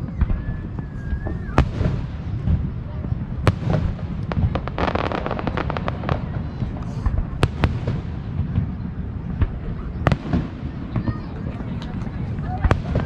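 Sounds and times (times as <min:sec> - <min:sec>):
fireworks booming and popping: 0:00.0 - 0:13.0
fireworks crackling: 0:00.0 - 0:13.0.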